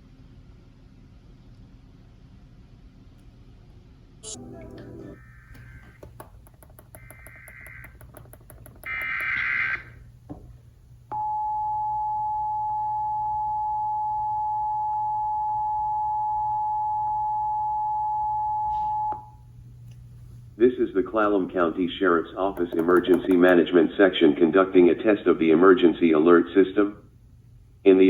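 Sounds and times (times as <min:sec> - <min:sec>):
warbling data tones: 0:06.9 - 0:10.0.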